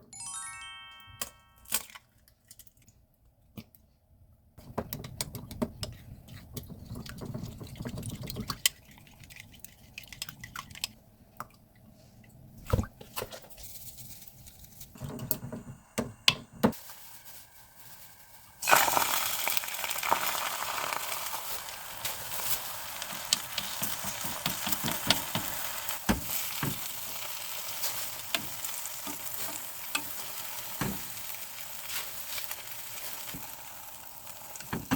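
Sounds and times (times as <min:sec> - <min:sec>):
stirring scrapes and taps: 0:04.8 - 0:11.0, 0:23.1 - 0:25.6
food sizzling in a hot pan: 0:16.7 - 0:34.9.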